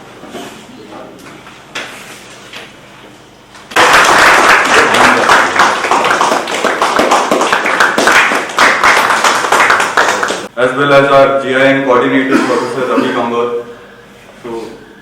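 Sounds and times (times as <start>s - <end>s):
people applauding: 3.7s - 10.5s.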